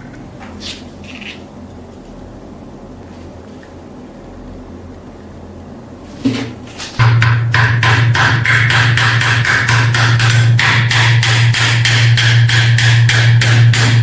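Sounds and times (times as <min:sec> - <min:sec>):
machine humming with knocks: 0:06.0 - 0:14.0.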